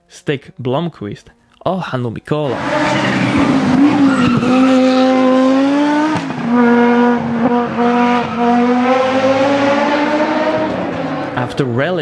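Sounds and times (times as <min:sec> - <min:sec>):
rally car engine accelerating: 0:02.5 - 0:11.8.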